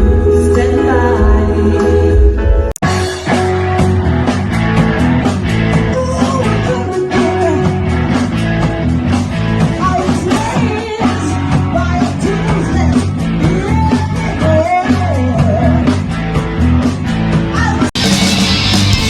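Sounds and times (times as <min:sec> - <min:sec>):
rock band playing live: 0:00.0 - 0:19.0.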